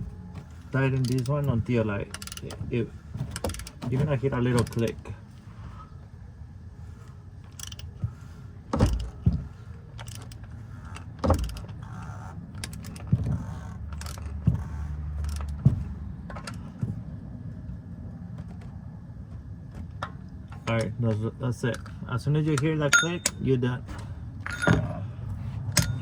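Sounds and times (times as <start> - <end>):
socket wrench clicks and knocks: 25.7 - 26.0.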